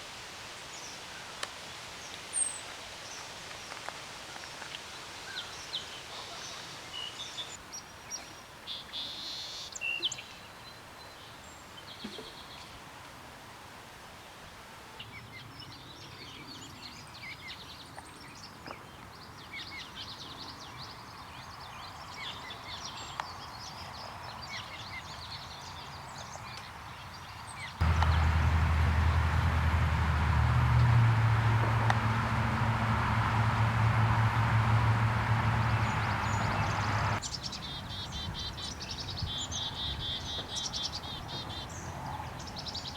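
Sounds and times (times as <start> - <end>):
birds chirping: 27.8 - 37.2.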